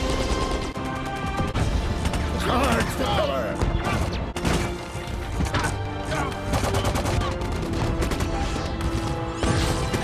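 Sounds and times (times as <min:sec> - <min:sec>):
dramatic orchestral music: 0:00.0 - 0:10.0.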